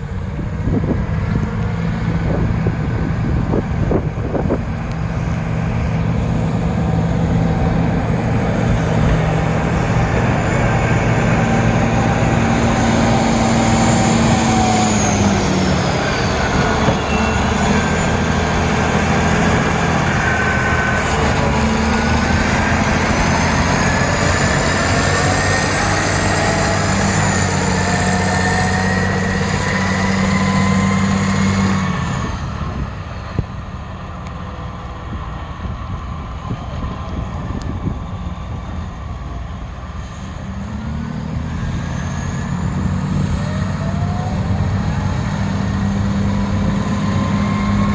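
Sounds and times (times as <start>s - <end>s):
diesel engine revving: 0.0s - 47.9s
thin gliding whine: 1.3s - 33.4s.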